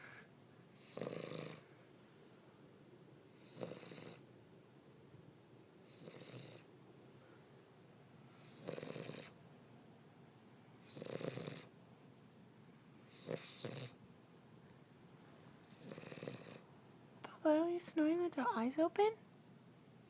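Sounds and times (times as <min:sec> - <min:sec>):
dog snoring: 0:00.0 - 0:01.7, 0:03.3 - 0:04.3, 0:05.8 - 0:06.7, 0:08.3 - 0:09.4, 0:10.8 - 0:11.7, 0:13.0 - 0:14.0, 0:15.6 - 0:16.7.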